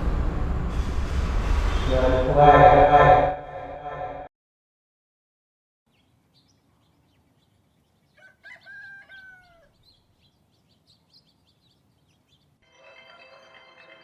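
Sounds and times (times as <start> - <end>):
small birds chirping: 5.9 - 12.6
rooster crowing: 8.2 - 9.8
music: 12.6 - 14.0.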